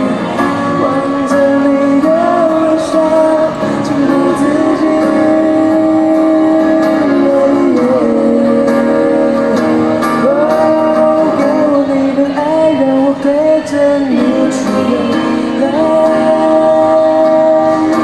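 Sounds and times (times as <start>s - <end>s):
guitar accompaniment: 0.0s - 18.0s
person singing long notes: 0.0s - 18.0s.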